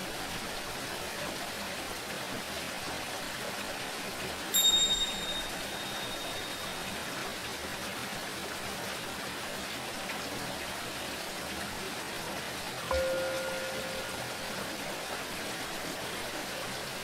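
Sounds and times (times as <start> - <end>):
tingsha cymbals ringing: 4.6 - 7.2, 12.9 - 15.1.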